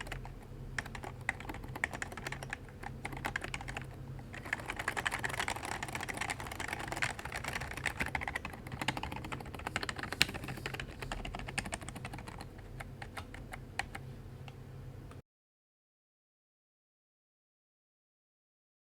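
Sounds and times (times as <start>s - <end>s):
fast typing key clicks: 0.0s - 14.0s.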